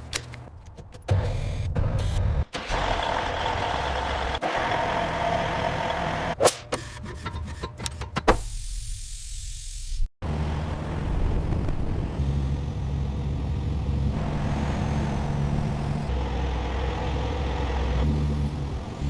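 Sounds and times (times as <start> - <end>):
truck diesel engine droning: 1.6 - 6.4, 10.2 - 19.0.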